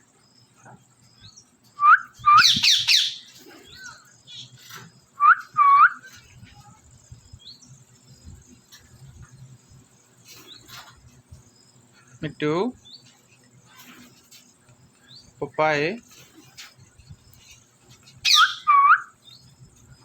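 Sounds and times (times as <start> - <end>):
faint bird chirps: 0.0 - 15.6, 16.2 - 20.0
parrot screeching and chattering: 2.4 - 3.4, 18.2 - 18.8.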